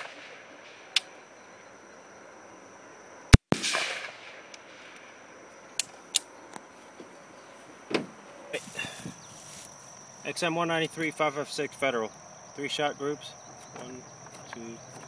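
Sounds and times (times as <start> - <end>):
rifle shot with echo: 0.0 - 0.8, 3.4 - 5.0.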